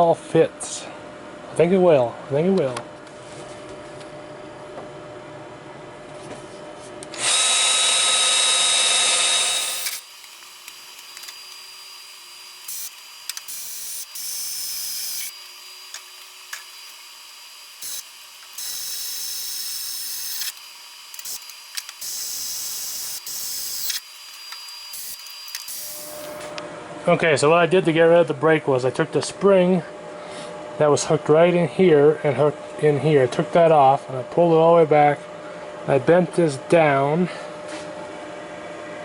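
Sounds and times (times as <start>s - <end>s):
power drill drilling: 7.1s - 26.5s.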